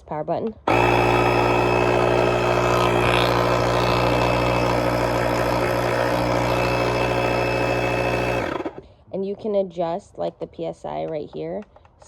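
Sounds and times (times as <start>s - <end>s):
electric air compressor running: 0.7s - 8.8s.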